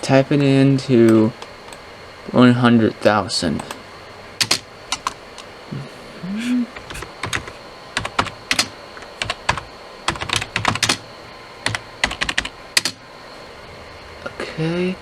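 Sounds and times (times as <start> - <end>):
typing on computer keyboard: 4.4 - 5.2, 6.8 - 11.0, 11.7 - 13.0.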